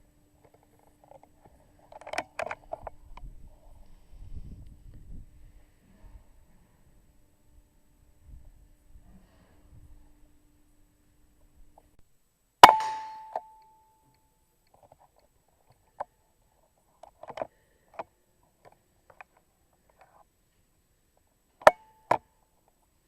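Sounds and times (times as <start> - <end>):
air rifle shot: 12.6 - 13.4.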